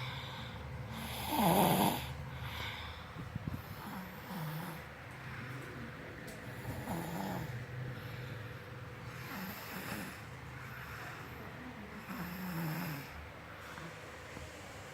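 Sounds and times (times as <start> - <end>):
child snoring: 0.9 - 2.8, 3.6 - 4.8, 6.6 - 7.6, 9.1 - 10.3, 12.0 - 13.2.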